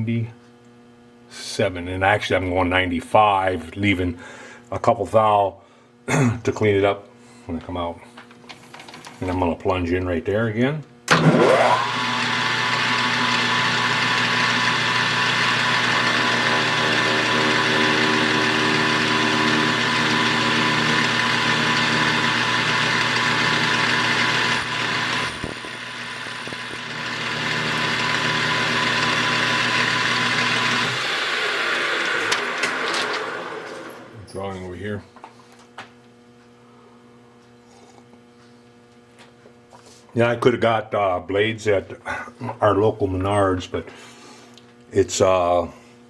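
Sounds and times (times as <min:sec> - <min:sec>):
metal lathe running: 0:11.1 - 0:34.1
cutting tool on workpiece: 0:11.6 - 0:33.9
faint high whine: 0:24.4 - 0:26.8.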